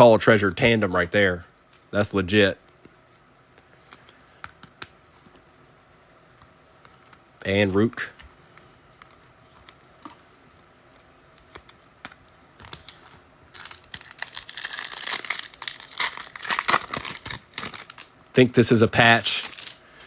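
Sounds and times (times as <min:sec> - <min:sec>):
foil wrapper crinkling and tearing: 0:11.5 - 0:20.0.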